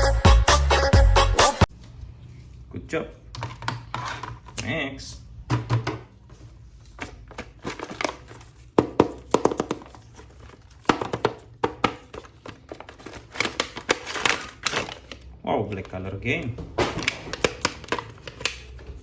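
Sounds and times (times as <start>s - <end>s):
packaging crinkling and tearing: 6.7s - 8.8s, 12.0s - 16.0s, 16.8s - 19.0s.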